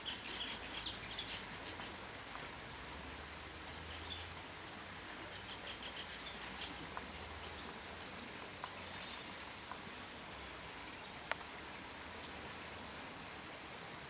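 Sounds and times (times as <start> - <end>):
background hiss: 0.0 - 14.0.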